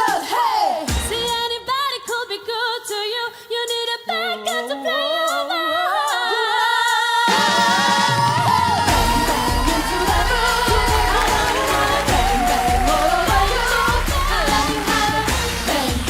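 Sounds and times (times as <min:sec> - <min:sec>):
vocal group singing in harmony: 0:00.0 - 0:03.4, 0:04.0 - 0:16.0.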